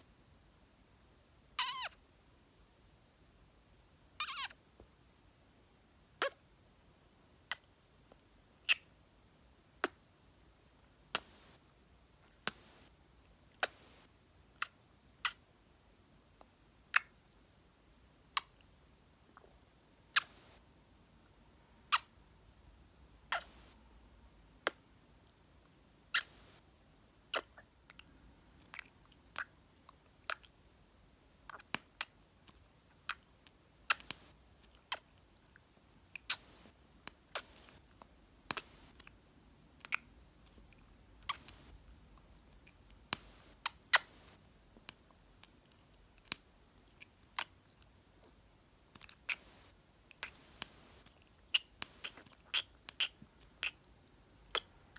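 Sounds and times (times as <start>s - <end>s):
kissing and lip-smacking: 1.6s - 2.0s, 4.2s - 4.5s, 6.2s - 6.4s, 8.7s - 8.9s, 13.6s - 14.0s, 14.6s - 15.4s, 16.9s - 17.2s, 18.4s - 18.6s, 20.2s - 20.6s, 21.9s - 22.1s, 23.3s - 23.7s, 26.1s - 26.6s, 27.3s - 28.0s, 28.6s - 30.5s, 31.5s - 35.6s, 36.2s - 37.8s, 38.5s - 39.1s, 39.8s - 40.6s, 41.2s - 48.3s, 48.9s - 54.8s.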